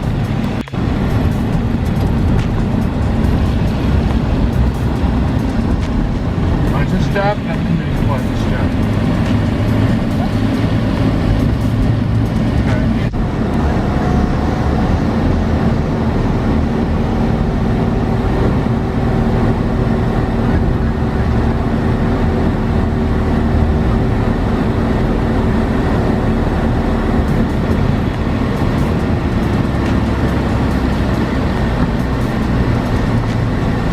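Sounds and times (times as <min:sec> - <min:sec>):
low hum: 0:00.0 - 0:33.9
vehicle engine and road noise: 0:00.0 - 0:33.9.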